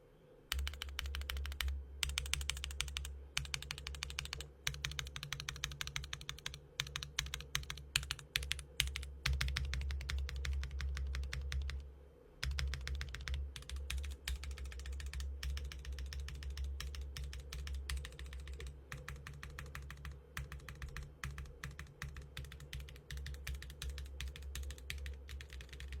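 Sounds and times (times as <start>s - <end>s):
mechanical keyboard typing: 0.5s - 11.8s, 12.4s - 26.0s.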